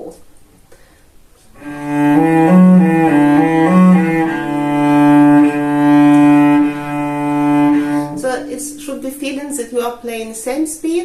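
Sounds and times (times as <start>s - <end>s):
bowed cello legato: 1.6s - 9.8s.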